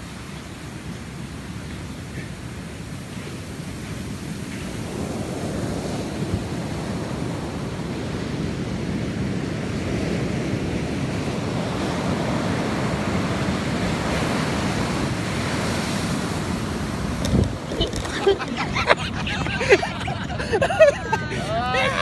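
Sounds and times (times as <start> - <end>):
ocean surf on beach: 0.0 - 22.0
wind buffeting microphone: 3.9 - 21.4.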